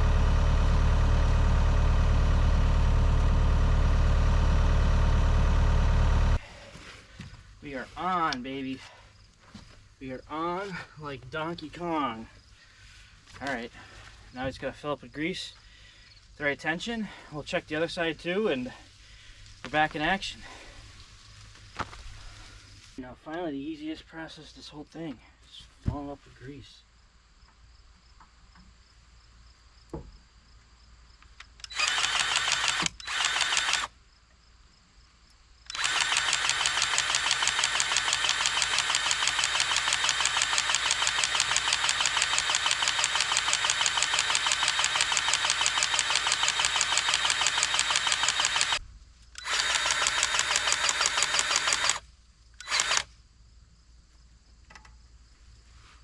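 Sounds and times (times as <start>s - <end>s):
powered grease gun pumping: 31.6s - 33.9s, 35.7s - 48.8s, 49.4s - 52.0s, 52.6s - 53.1s.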